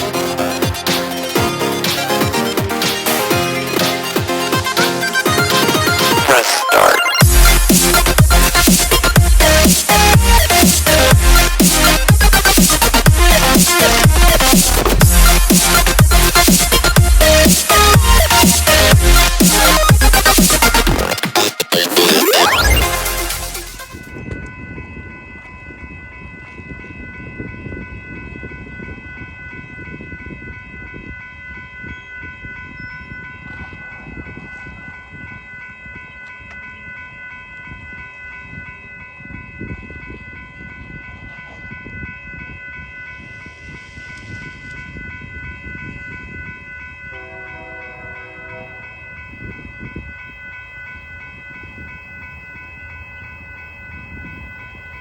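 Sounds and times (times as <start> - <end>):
high-pitched ringing: 0.0 - 55.0
train horn: 47.1 - 49.0.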